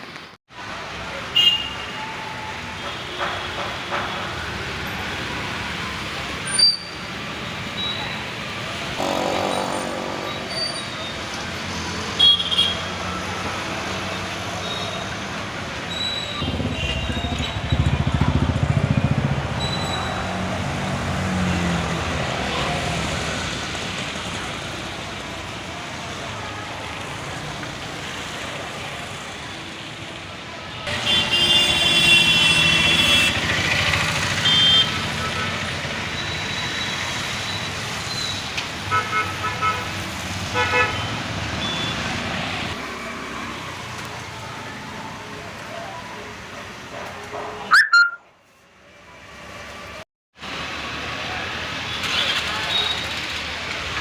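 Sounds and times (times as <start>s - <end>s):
road traffic: 0.0s - 54.0s
heavy vehicle rumbling past: 8.8s - 11.6s
car horns: 8.9s - 11.2s, 34.3s - 35.4s, 40.5s - 42.0s, 47.5s - 48.2s.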